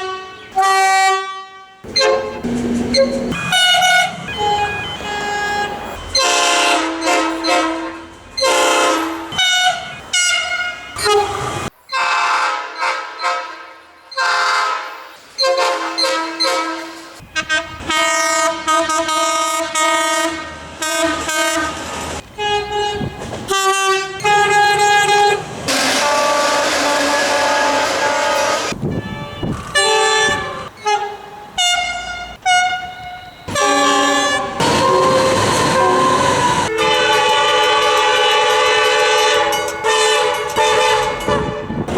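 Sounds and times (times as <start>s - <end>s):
train horn blasts: 0.0s - 41.9s
rushing noise: 25.4s - 28.9s, 34.2s - 38.2s.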